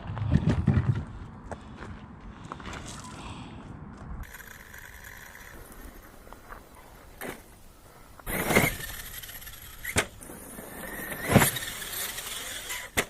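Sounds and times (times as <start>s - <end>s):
tyre noise: 3.9s - 13.0s
rc truck motor whine: 4.2s - 13.0s.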